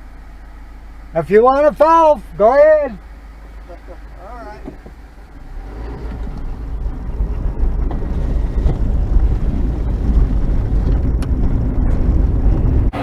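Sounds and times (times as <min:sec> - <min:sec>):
road noise: 0:00.0 - 0:13.0
vehicle engine accelerating: 0:03.5 - 0:13.0.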